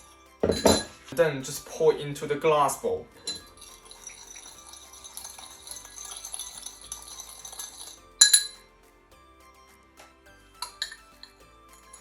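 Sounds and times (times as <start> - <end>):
bowl clinking: 0.4 - 1.2, 3.1 - 8.6, 10.6 - 12.0
liquid trickling into a bowl: 3.3 - 8.0.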